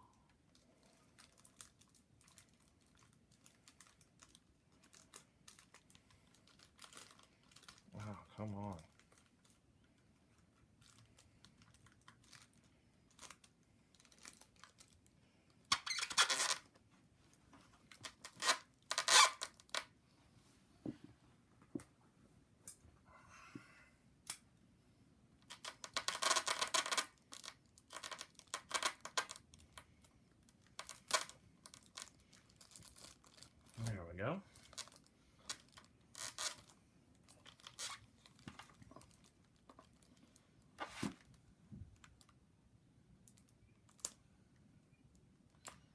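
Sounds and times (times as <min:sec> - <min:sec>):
adhesive tape peeling and tearing: 0:15.7 - 0:16.7, 0:18.0 - 0:19.8, 0:25.5 - 0:29.4, 0:30.7 - 0:33.4, 0:35.5 - 0:36.7, 0:37.5 - 0:38.0.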